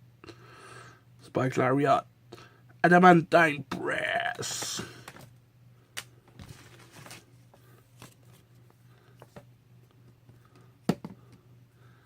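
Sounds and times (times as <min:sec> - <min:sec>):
trading cards rustling: 0:04.4 - 0:05.3, 0:06.0 - 0:09.4.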